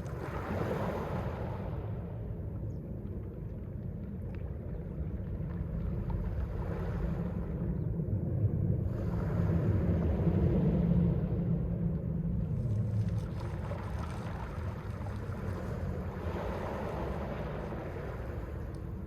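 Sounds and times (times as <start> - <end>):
sea waves washing onto shore: 8.8 - 19.0.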